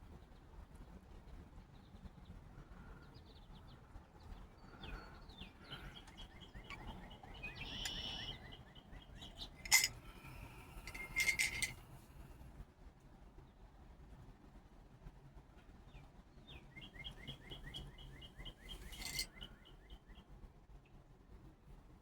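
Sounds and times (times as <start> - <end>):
faint outdoor background noise: 0.0 - 22.0
small birds chirping: 3.1 - 11.6, 16.5 - 20.2.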